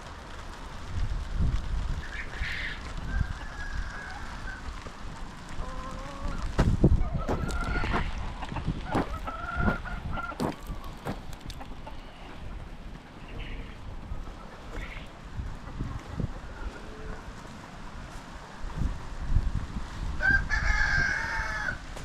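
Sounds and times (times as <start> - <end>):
chickens calling: 1.8 - 18.2, 20.2 - 22.0
rooster crowing: 3.1 - 4.7, 8.9 - 10.5, 20.2 - 21.9.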